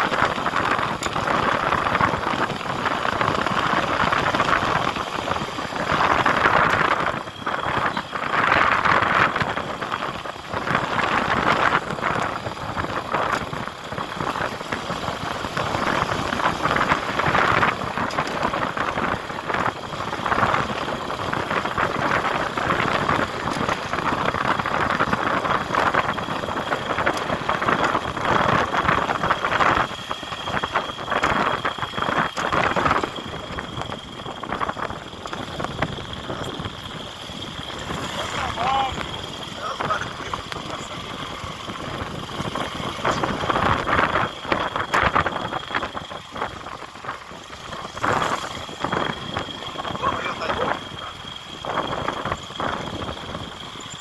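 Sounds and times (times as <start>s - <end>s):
vehicle engine and road noise: 0.0s - 54.0s
faint high whine: 27.5s - 54.0s.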